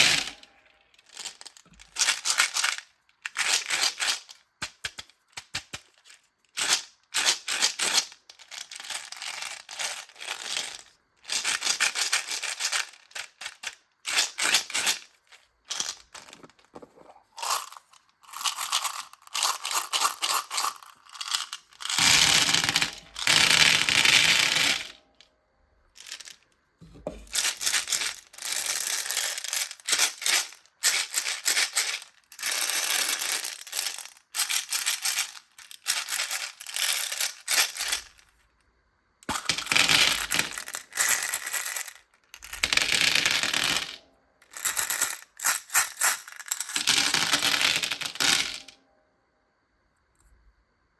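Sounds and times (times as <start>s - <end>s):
micro beads pouring: 17.4s - 25.0s, 27.3s - 38.2s, 39.2s - 48.7s.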